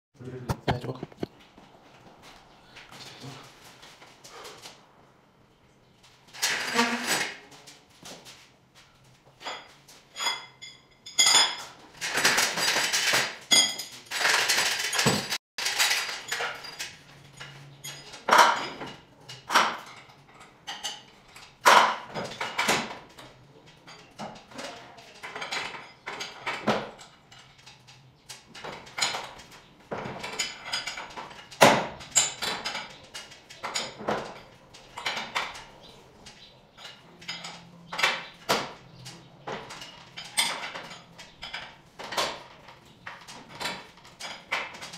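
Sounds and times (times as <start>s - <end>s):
metal tools clinking and clanking: 9.4s - 44.9s.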